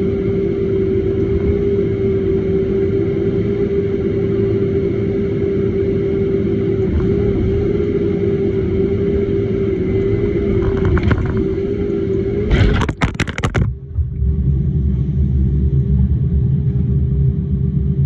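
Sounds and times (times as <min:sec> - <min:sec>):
clatter of sharp knocks: 0:10.5 - 0:11.8, 0:12.5 - 0:13.8.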